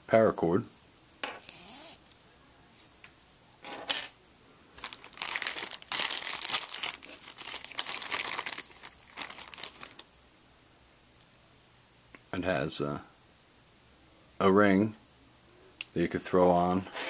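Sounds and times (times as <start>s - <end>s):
plastic packaging crinkling: 4.8s - 10.1s.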